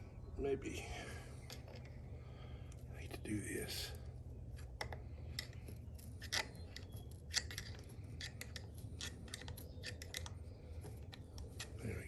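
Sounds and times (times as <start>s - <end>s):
hand tools clicking and scraping metal: 4.8s - 12.0s.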